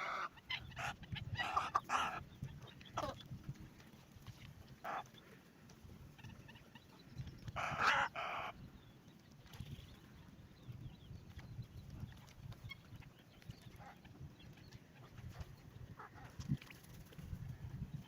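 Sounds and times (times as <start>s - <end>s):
faint bird calls: 6.1s - 9.0s
fowl squawking: 7.6s - 8.5s.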